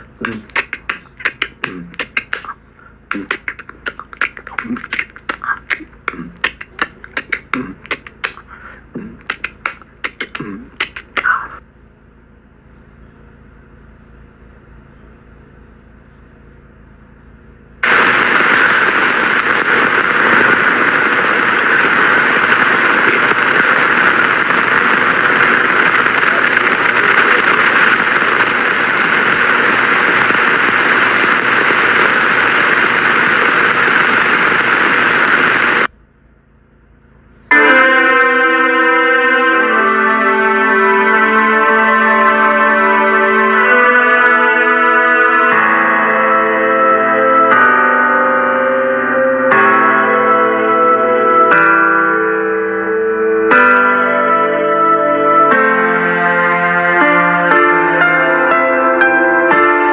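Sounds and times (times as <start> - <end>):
mouth clicks and pops: 0.2 - 11.6
loud steady rushing noise: 17.8 - 35.9.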